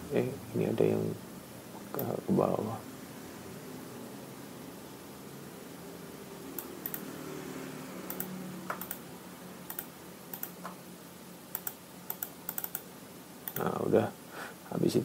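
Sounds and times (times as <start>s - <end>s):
computer keyboard and mouse clicks: 6.6s - 7.1s, 8.1s - 9.0s, 9.7s - 10.8s, 11.5s - 12.9s, 13.5s - 13.7s.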